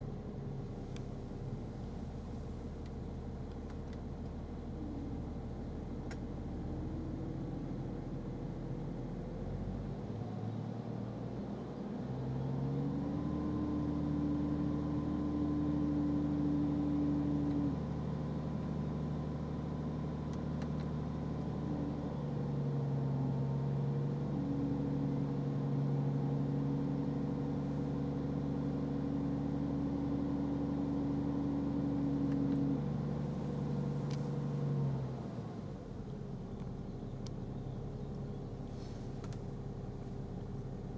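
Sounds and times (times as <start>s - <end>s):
car air conditioning humming: 0.4s - 4.5s, 32.4s - 34.9s, 36.6s - 40.9s.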